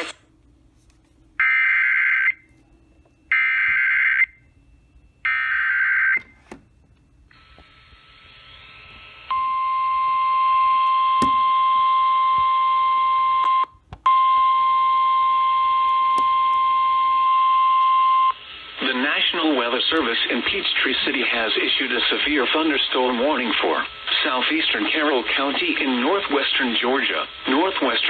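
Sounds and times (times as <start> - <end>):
radio static: 0.0 - 0.3, 18.4 - 28.0.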